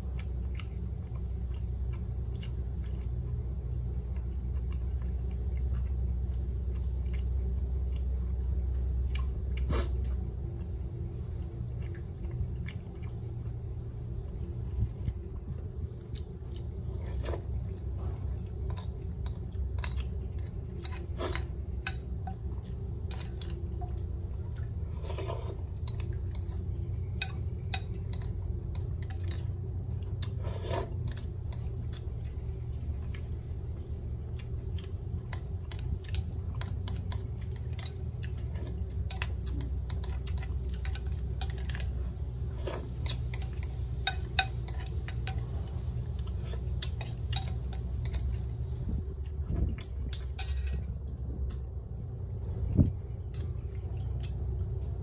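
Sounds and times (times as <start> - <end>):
steady low hum: 0.0 - 55.0
utensils clicking on dishes: 42.6 - 45.6, 46.2 - 48.4.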